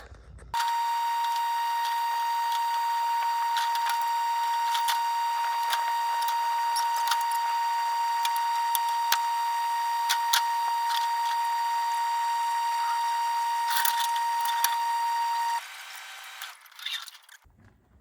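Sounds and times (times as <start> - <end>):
power grinder cutting metal: 0.6 - 17.4.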